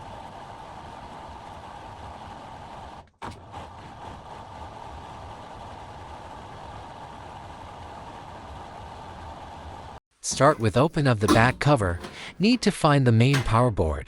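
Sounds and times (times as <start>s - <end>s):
washing machine humming: 10.3s - 13.8s.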